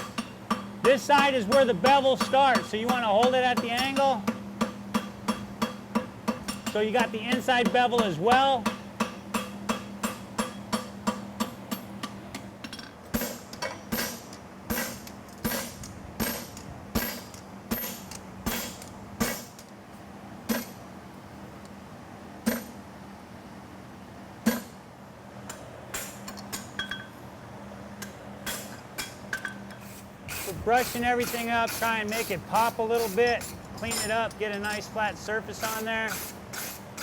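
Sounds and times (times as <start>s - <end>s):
hammer striking on anvil: 0.0s - 12.2s.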